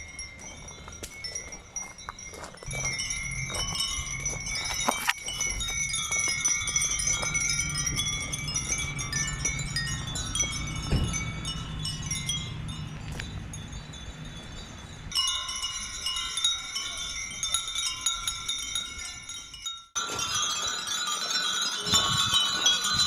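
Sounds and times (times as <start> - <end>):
wind chimes tinkling: 0.0 - 23.0
low steady rumble: 2.3 - 16.4.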